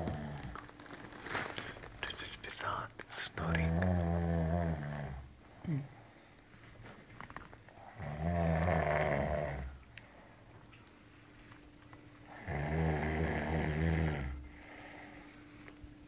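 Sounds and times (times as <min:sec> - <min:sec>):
man snoring heavily: 0:03.7 - 0:05.2, 0:08.0 - 0:09.7, 0:12.4 - 0:14.4.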